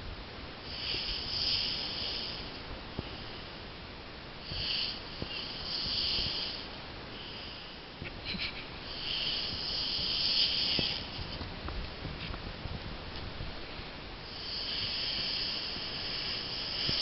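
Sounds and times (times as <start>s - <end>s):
man snoring: 0.7s - 2.6s, 4.4s - 6.7s, 8.8s - 11.2s, 14.2s - 17.0s.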